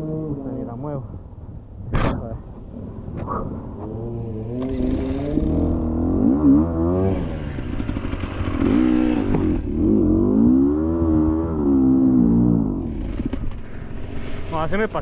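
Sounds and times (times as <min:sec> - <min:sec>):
dirt bike engine revving: 0:03.8 - 0:15.0.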